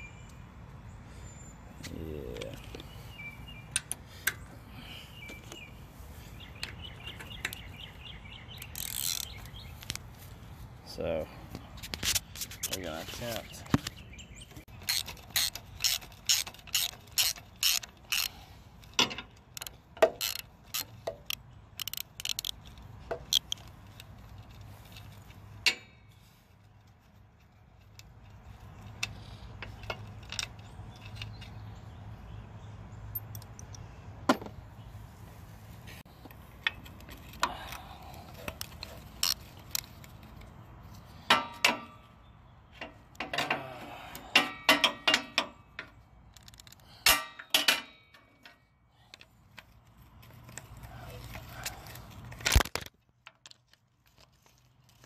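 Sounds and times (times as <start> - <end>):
ratchet wrench clicking: 8.6 - 10.0, 14.8 - 25.8, 46.3 - 47.2.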